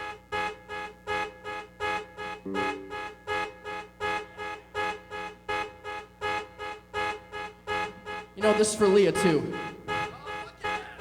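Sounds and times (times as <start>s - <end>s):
car alarm horn honking: 0.4s - 11.0s.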